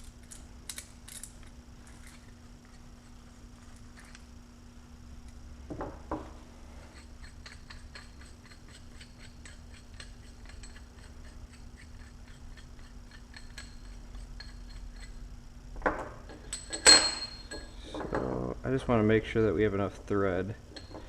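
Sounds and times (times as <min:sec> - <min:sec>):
steady low hum: 0:00.0 - 0:21.0
metal clink: 0:16.4 - 0:17.8.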